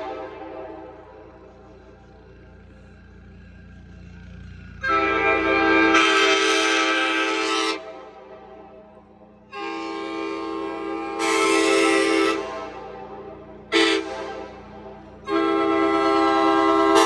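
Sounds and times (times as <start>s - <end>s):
train air horn chord: 4.8s - 7.8s, 13.8s - 17.0s.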